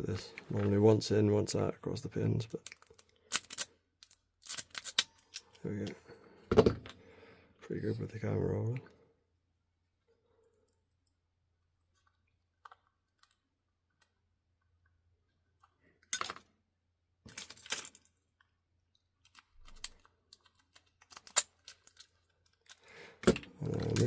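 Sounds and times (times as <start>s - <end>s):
padlock clattering: 2.7s - 5.6s, 19.3s - 24.0s.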